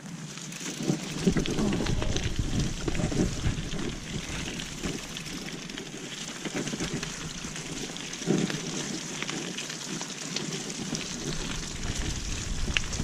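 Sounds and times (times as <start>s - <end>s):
bike tyre rumble: 0.0s - 13.0s
bike rattles and knocks: 0.4s - 13.0s
wind on microphone: 1.1s - 5.7s, 11.0s - 13.0s.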